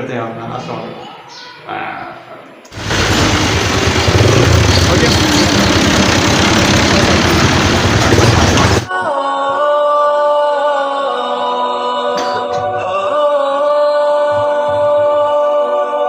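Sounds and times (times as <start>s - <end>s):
loud rushing noise: 2.7s - 8.9s
unaccompanied singing with held notes: 5.5s - 16.0s.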